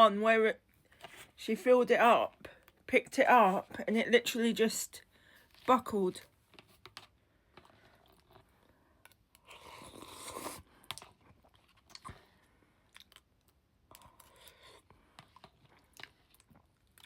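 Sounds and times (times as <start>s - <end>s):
person chewing noodles: 7.0s - 17.0s.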